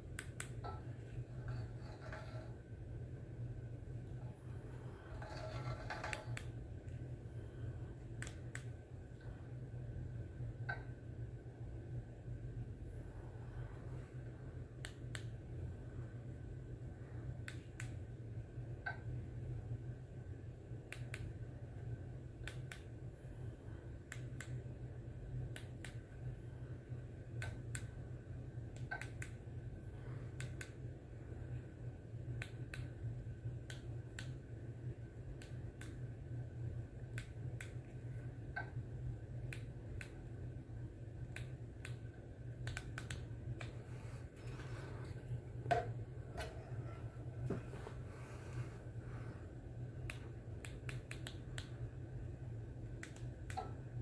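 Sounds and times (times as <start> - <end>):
ceiling fan humming: 0.0 - 54.0.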